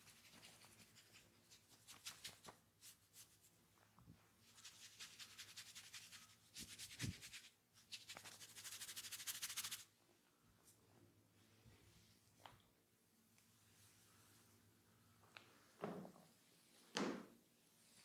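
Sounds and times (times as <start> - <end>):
hands rubbing hair and scalp: 0.0 - 3.5, 4.5 - 9.9.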